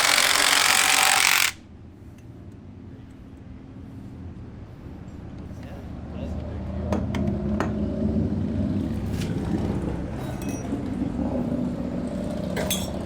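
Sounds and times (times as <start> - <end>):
metal tools clinking: 10.2 - 10.8, 12.6 - 13.0.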